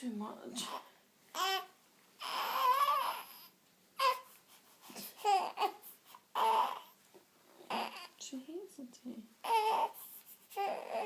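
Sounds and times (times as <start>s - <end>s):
newborn baby crying: 0.6s - 7.0s, 7.6s - 8.2s, 9.3s - 11.0s.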